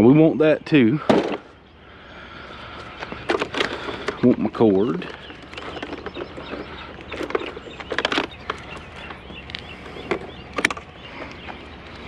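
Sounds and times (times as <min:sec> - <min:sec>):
birds chirping: 0:00.0 - 0:12.0
knocks and clatters of handling: 0:03.0 - 0:11.6.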